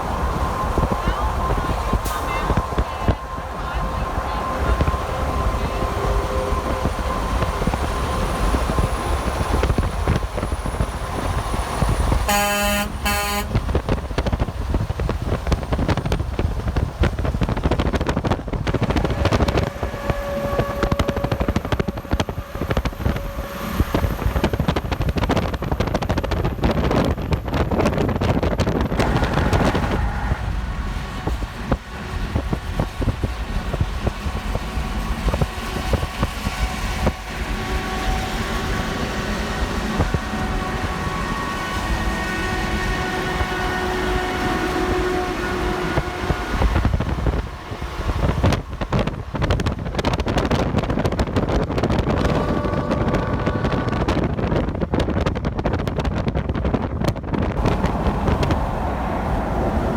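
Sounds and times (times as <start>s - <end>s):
highway traffic roar: 0.0s - 59.9s
truck air horn blasts: 12.3s - 13.8s, 18.9s - 23.8s, 29.0s - 31.0s, 37.4s - 47.4s, 52.1s - 54.4s.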